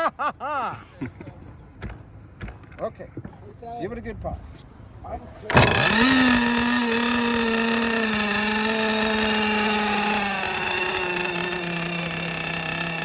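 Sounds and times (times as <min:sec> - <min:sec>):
small two-stroke engine idling: 0:05.3 - 0:13.0.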